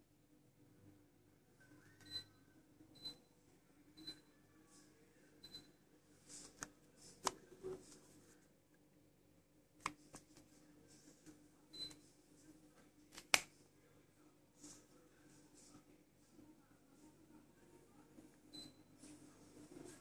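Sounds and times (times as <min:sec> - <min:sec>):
air conditioner hum: 0:00.0 - 0:20.0.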